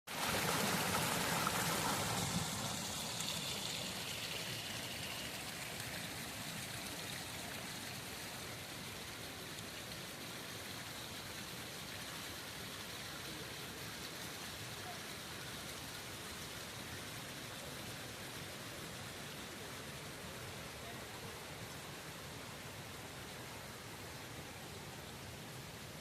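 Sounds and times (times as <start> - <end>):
water rushing: 0.1 - 26.0.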